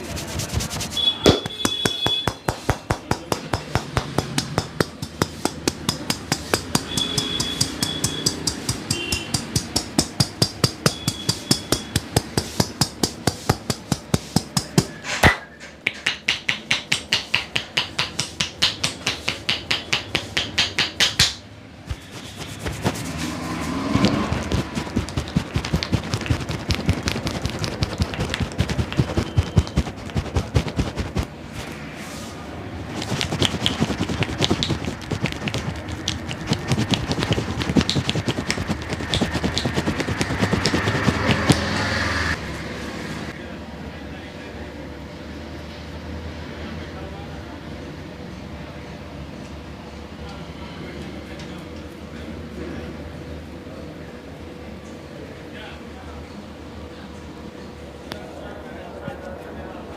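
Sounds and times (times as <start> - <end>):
hands slapping in massage: 16.1 - 23.1, 24.0 - 31.3, 33.0 - 41.8.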